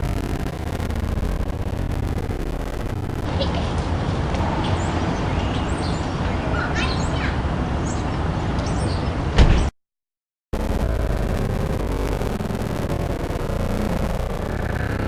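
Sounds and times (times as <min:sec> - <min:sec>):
city traffic rumble: 0:01.0 - 0:09.4.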